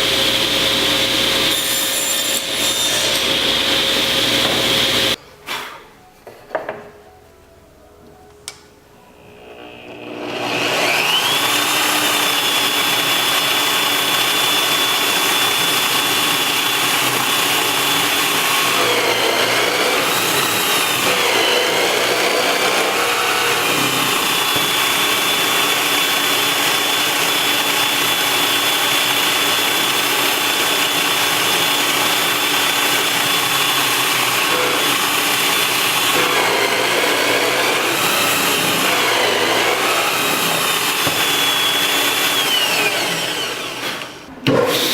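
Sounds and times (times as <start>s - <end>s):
power tool cutting wood: 0.0s - 5.2s, 9.2s - 44.9s.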